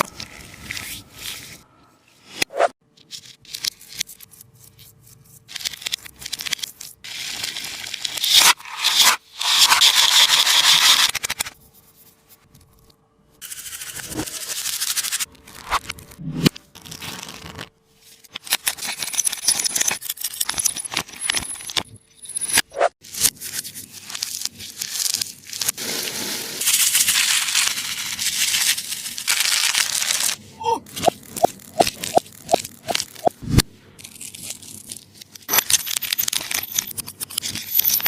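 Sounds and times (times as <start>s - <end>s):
tape squishy crinkling and tearing: 26.9s - 35.6s.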